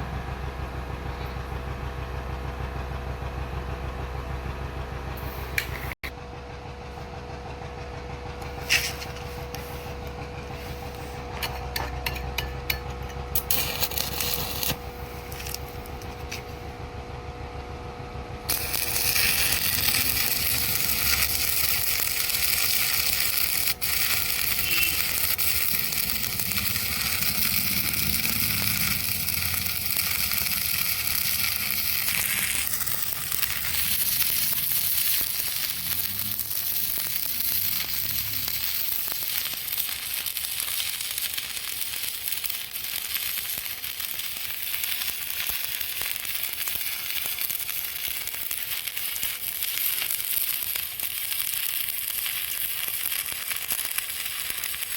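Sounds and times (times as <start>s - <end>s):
welding arc crackling: 8.4s - 16.7s, 18.4s - 54.9s.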